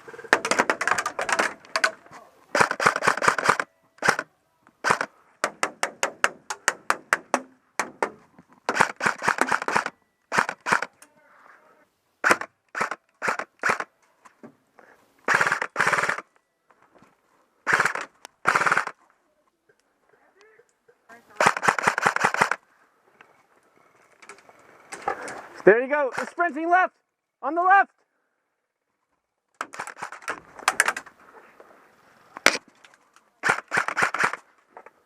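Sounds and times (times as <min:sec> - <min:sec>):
airsoft rifle firing bursts: 0:02.5 - 0:06.3, 0:08.7 - 0:10.9, 0:12.2 - 0:13.9, 0:15.3 - 0:16.3, 0:17.6 - 0:19.0, 0:21.4 - 0:22.6, 0:29.7 - 0:30.2, 0:33.4 - 0:34.4.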